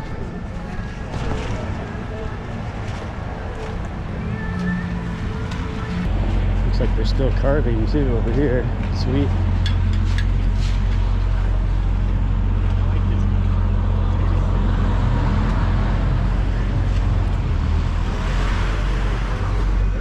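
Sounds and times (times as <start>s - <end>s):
engine humming: 0.0s - 20.0s
vehicle rushing by: 10.5s - 20.0s.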